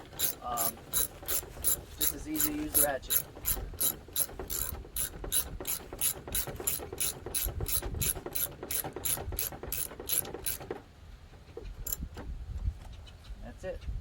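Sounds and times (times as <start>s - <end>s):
socket ratchet clicking: 0.0s - 10.6s.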